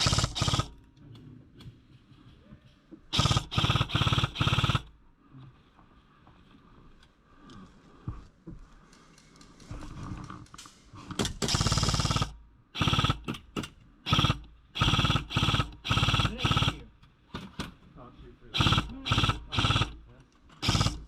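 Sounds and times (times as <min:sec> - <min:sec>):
airsoft gun firing bursts: 0:00.0 - 0:00.8, 0:03.1 - 0:05.0, 0:11.2 - 0:17.7, 0:18.5 - 0:21.0.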